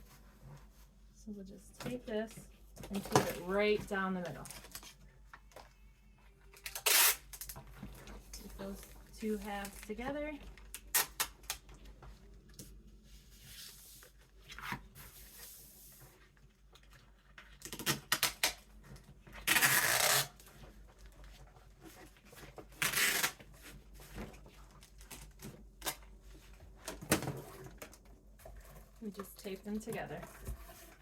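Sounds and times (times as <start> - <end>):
packing tape ripping: 6.6 - 7.6, 10.7 - 11.6, 17.6 - 18.7, 19.4 - 20.4, 22.7 - 23.4.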